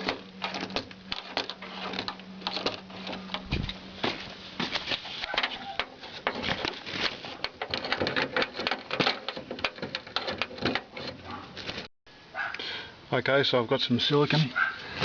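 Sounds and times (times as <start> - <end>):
metal and plastic parts rattling: 0.0 - 3.8, 4.7 - 11.9.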